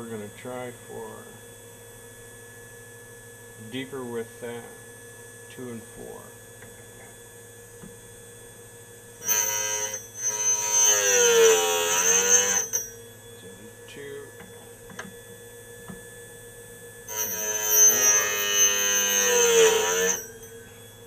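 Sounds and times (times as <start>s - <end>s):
grinding wheel cutting metal: 9.2s - 14.7s, 17.1s - 21.0s
grinder motor humming: 9.2s - 21.0s.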